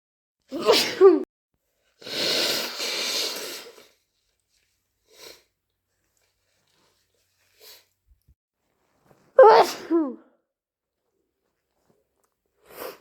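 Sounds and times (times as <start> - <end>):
faint sniffs: 1.9 - 5.6, 6.5 - 8.0
air rushing through congested nose: 2.0 - 4.0.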